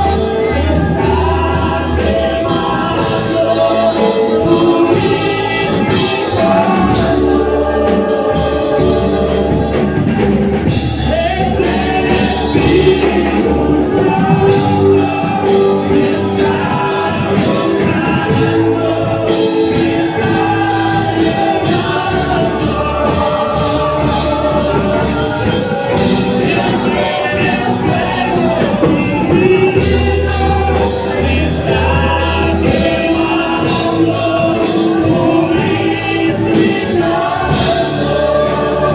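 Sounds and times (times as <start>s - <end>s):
band with bass and drums: 0.0s - 38.9s
group of voices singing: 0.0s - 38.9s.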